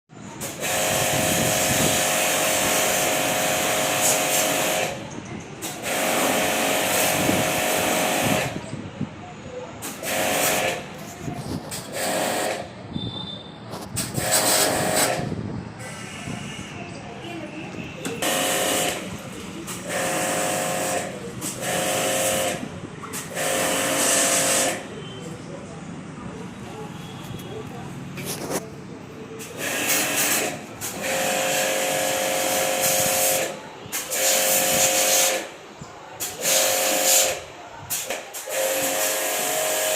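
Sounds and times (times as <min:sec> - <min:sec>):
pressure washer pump whining: 0:00.4 - 0:05.0, 0:05.6 - 0:08.6, 0:09.8 - 0:12.8, 0:13.9 - 0:16.7, 0:18.1 - 0:25.0, 0:29.4 - 0:35.6, 0:36.2 - 0:39.9.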